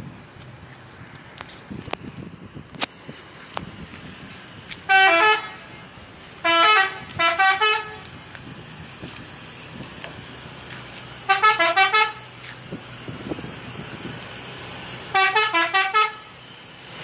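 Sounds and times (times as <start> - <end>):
bus horn playing notes: 4.9 - 5.8, 6.4 - 8.2, 11.2 - 12.4, 15.1 - 16.4.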